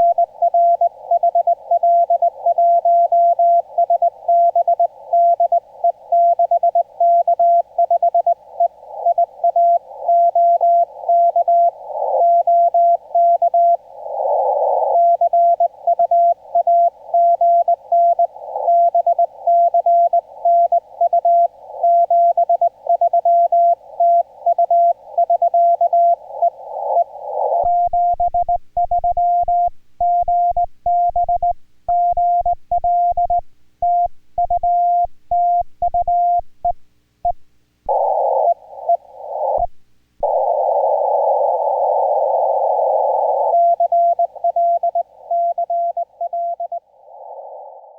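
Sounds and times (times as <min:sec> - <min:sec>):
radio hiss: 0:00.0 - 0:06.2, 0:07.6 - 0:28.1, 0:37.8 - 0:47.9.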